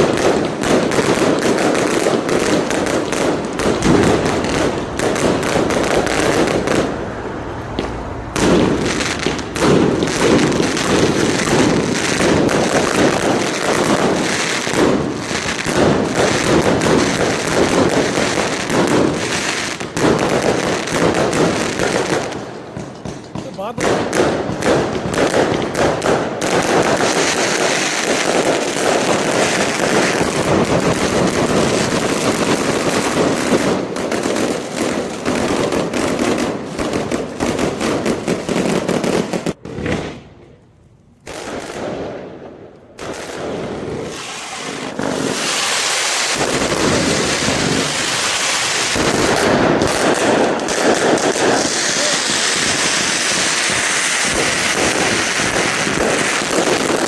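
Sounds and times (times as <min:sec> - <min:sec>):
fireworks bangs and crackling: 0:00.0 - 0:40.6, 0:41.2 - 0:57.0.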